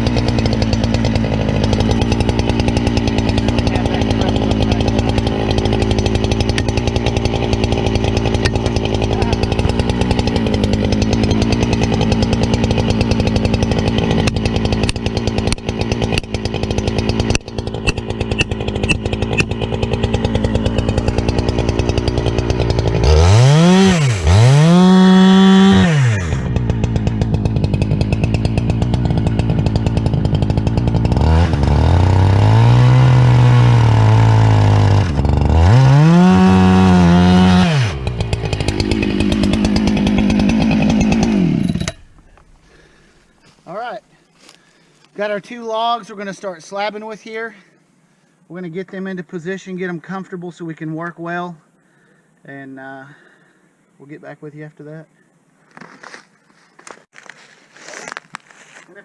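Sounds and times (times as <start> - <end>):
chainsaw cutting log: 0.0 - 43.1
sharp knocks: 17.2 - 19.7.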